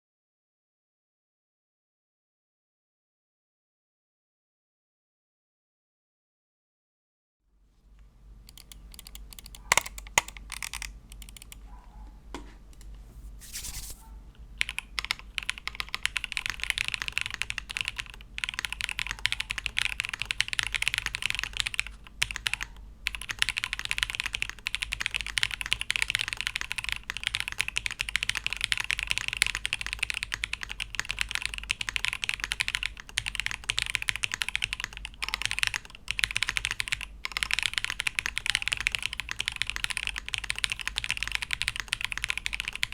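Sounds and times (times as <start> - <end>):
mechanical keyboard typing: 8.5 - 11.6, 14.6 - 42.9.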